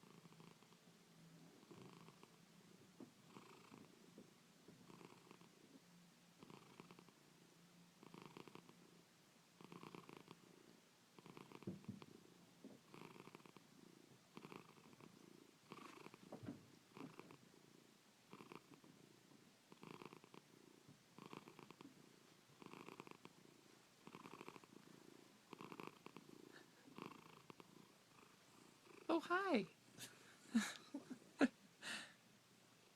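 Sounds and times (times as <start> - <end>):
cat snoring purr: 0.0 - 4.1, 4.7 - 5.8, 6.4 - 7.2, 8.0 - 9.0, 9.6 - 29.1.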